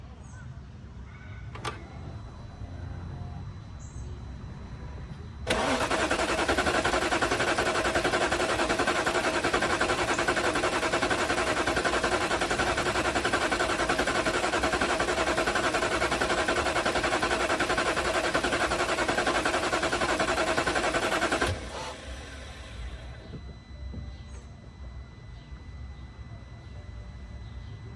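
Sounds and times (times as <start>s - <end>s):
starter motor cranking engine: 1.5s - 2.4s, 5.4s - 23.4s.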